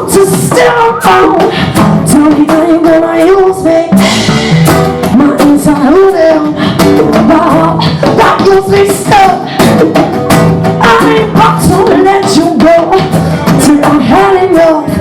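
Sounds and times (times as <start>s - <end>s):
person singing: 0.0s - 10.0s, 10.8s - 15.0s
hand percussion: 0.1s - 14.6s
strummed acoustic guitar: 8.2s - 14.3s.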